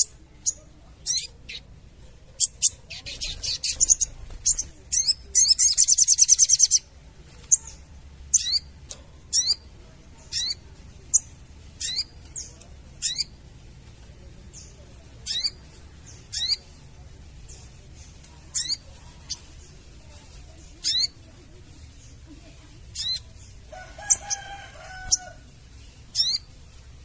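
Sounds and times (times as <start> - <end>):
bird chattering call: 0.0 - 1.7, 2.4 - 6.9, 7.5 - 8.7, 9.3 - 13.4, 14.5 - 16.8, 18.0 - 19.5, 20.8 - 21.3, 22.9 - 25.3.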